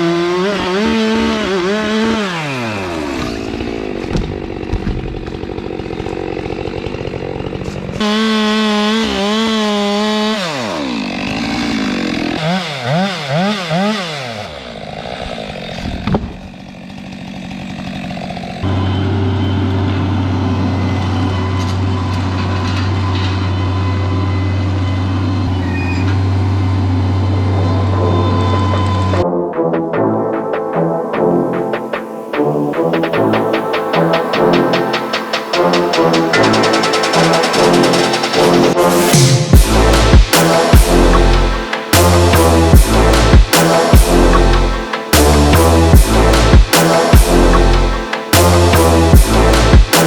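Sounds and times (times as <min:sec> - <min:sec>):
chainsaw revving: 0:00.0 - 0:22.3, 0:30.0 - 0:50.0
low engine drone: 0:18.6 - 0:50.0.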